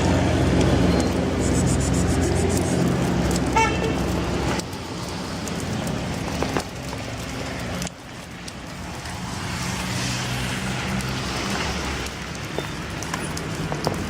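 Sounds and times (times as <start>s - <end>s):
vehicle engine running: 0.0s - 7.9s
street traffic: 0.0s - 14.0s.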